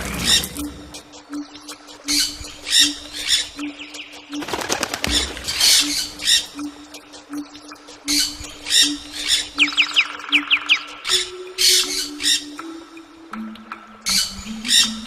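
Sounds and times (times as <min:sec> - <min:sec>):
bird wings flapping: 0:04.4 - 0:05.8.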